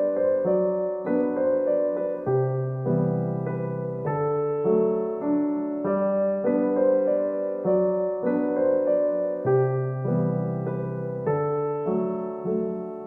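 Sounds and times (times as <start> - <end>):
gentle piano melody: 0.0 - 13.0.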